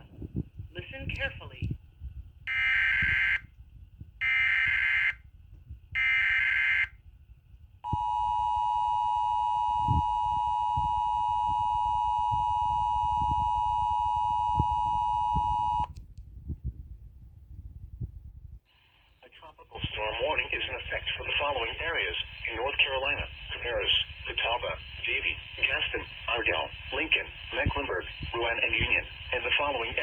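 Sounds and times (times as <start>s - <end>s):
two-tone attention signal: 7.9s - 15.9s.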